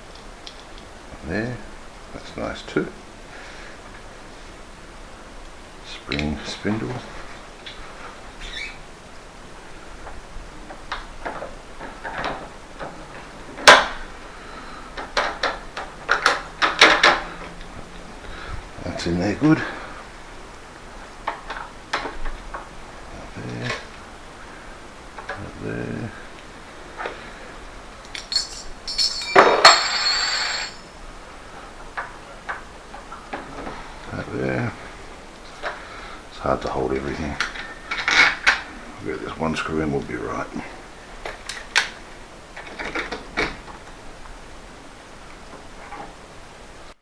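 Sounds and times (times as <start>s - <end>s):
metal door hardware clinking: 28.1s - 30.8s.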